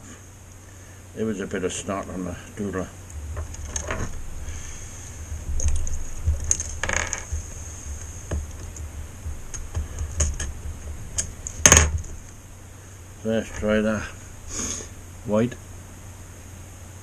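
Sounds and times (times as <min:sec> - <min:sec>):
low steady hum: 0:00.0 - 0:17.0
scraping rustle: 0:01.8 - 0:15.7
small tools clicking and tapping: 0:09.5 - 0:10.5.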